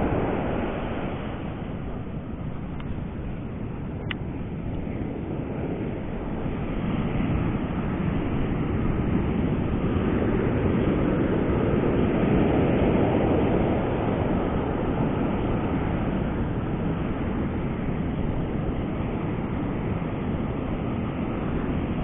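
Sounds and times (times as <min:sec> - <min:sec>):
ocean waves breaking: 0:00.0 - 0:03.9.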